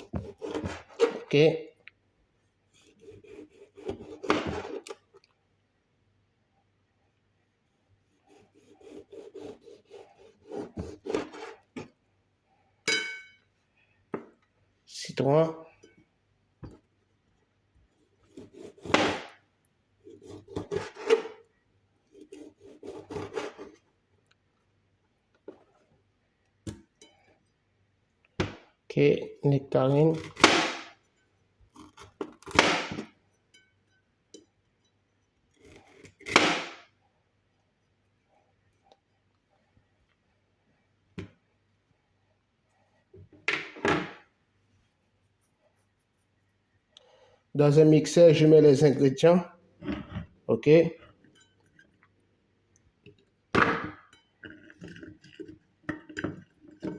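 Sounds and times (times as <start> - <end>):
knocks and clatter cutting fruit: 0.0 - 1.3, 3.8 - 5.0
knife sawing through lemon: 2.8 - 4.3, 8.3 - 11.6.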